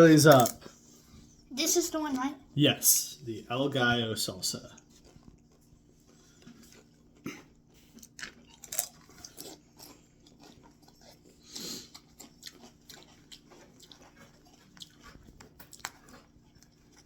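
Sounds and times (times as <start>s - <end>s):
chip crunching: 7.9s - 17.0s.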